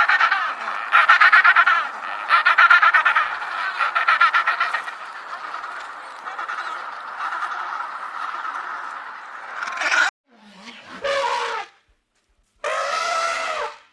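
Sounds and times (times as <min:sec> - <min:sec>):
birds chattering: 0:00.0 - 0:10.1
birds honking calls: 0:00.0 - 0:10.1.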